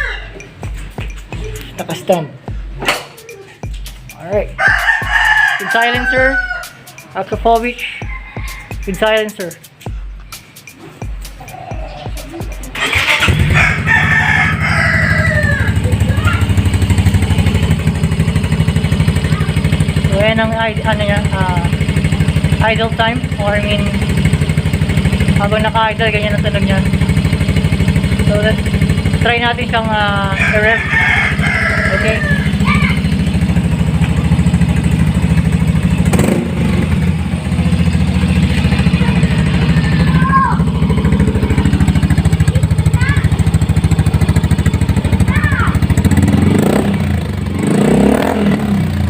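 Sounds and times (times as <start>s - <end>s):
rooster crowing: 4.6s - 7.2s, 7.8s - 8.9s, 13.0s - 16.4s, 30.3s - 33.1s
scooter engine starting and idling: 10.8s - 49.0s.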